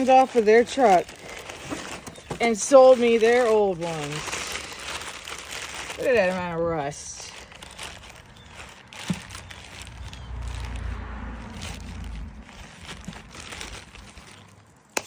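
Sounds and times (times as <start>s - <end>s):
packaging rustling and crinkling: 0.0s - 15.0s
low rumble: 7.3s - 14.7s.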